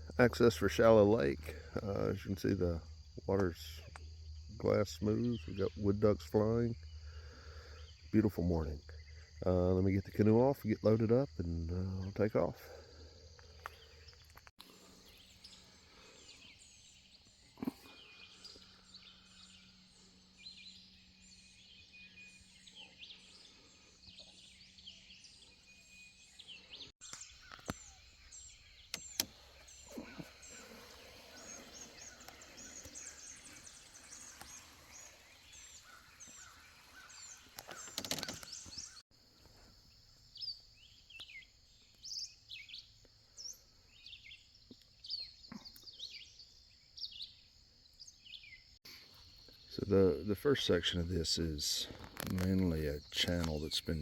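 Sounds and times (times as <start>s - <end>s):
faint outdoor background noise: 0.0s - 54.0s
birds chirping and calling: 12.0s - 39.0s.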